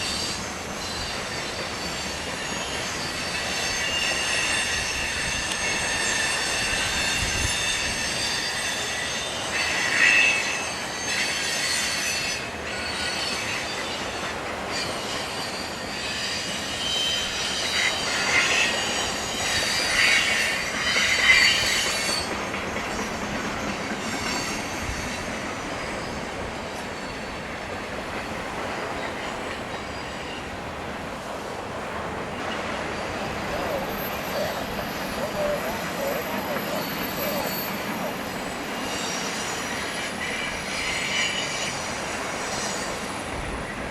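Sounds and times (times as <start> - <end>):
train wheels squealing on rails: 0.0 - 43.9
wind on microphone: 4.8 - 8.2.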